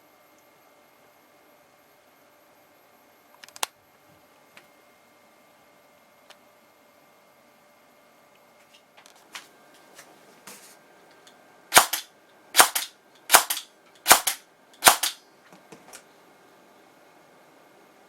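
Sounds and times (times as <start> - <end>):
airsoft gun shots: 11.7 - 15.2.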